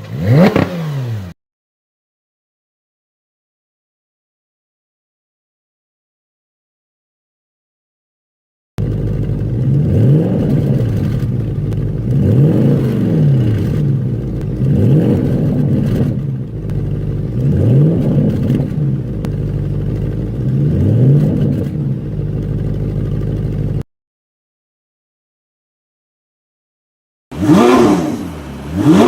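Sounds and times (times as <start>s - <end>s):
car engine revving: 0.0s - 1.4s, 8.8s - 23.8s, 27.3s - 29.0s.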